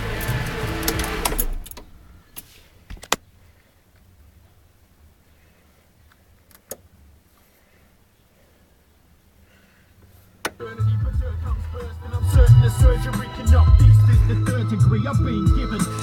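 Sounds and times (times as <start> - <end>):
car engine running: 0.0 - 1.4, 10.8 - 16.0.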